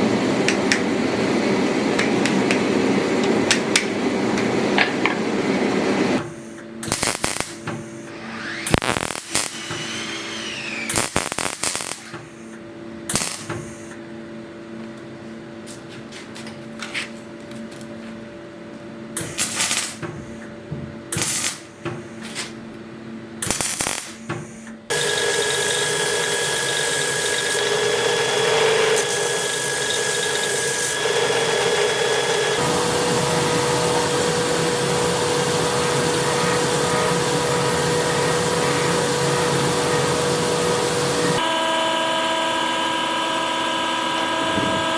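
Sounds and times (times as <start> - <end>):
power tool running: 0.0 - 12.5, 23.4 - 44.9.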